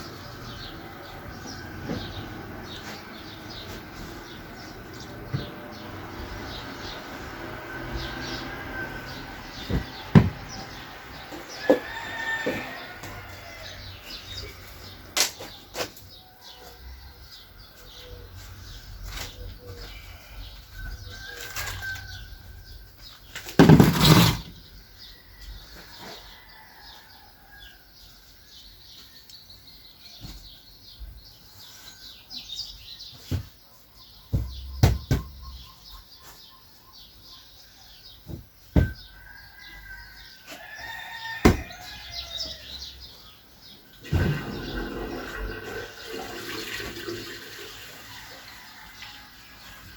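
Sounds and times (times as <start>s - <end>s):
birds chirping: 0.0s - 23.4s, 24.6s - 48.8s
sharp knocks: 9.6s - 10.6s.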